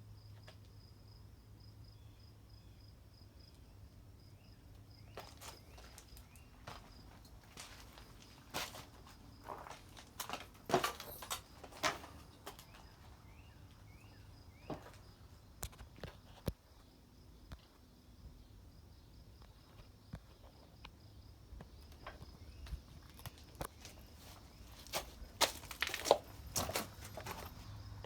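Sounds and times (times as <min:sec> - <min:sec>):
footsteps outdoors: 0:05.0 - 0:16.6, 0:21.6 - 0:28.0.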